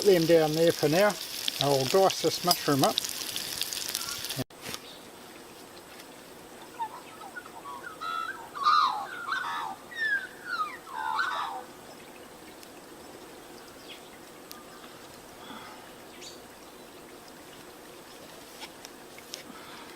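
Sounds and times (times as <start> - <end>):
faint steady hiss: 0.0 - 19.9
songbird singing: 6.5 - 18.2.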